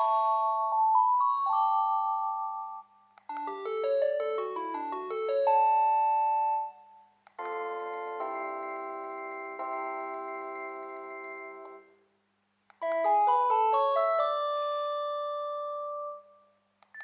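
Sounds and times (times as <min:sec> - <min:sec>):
cordless phone ringtone melodies: 0:00.0 - 0:02.9, 0:07.5 - 0:11.9.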